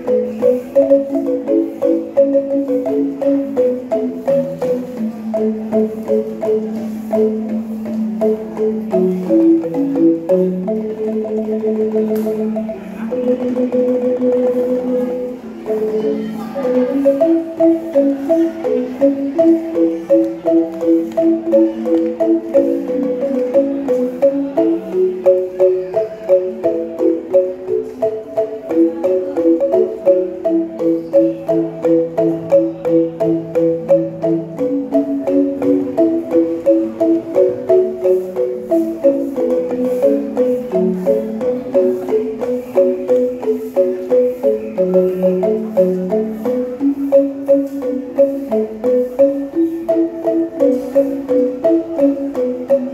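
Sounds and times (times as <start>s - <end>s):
angklung music: 0.0s - 52.9s.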